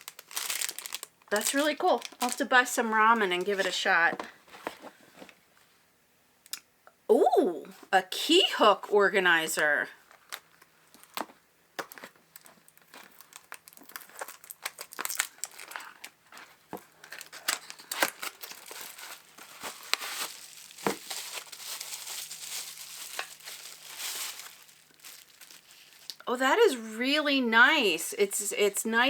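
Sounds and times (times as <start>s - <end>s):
packaging crinkling and tearing: 0.0s - 3.8s, 10.0s - 26.2s.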